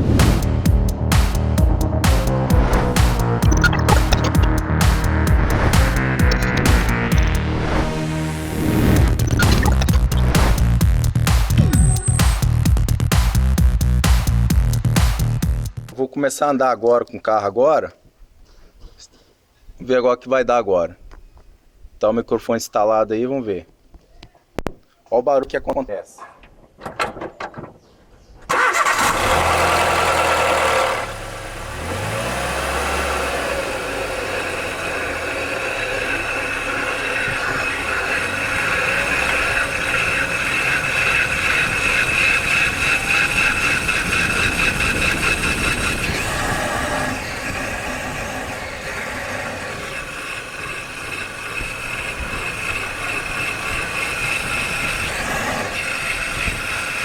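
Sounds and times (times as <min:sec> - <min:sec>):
car engine starting: 0:00.0 - 0:15.9, 0:28.5 - 0:57.0.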